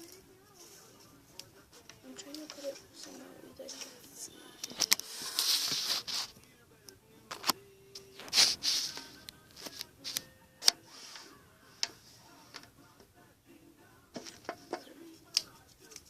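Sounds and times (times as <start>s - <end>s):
rustling: 0.0s - 6.5s, 7.3s - 12.7s.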